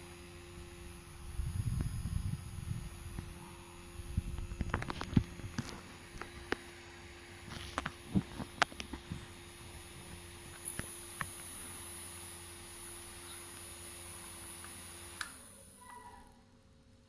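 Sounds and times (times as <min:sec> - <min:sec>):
small toy motor whining: 0:00.0 - 0:16.6.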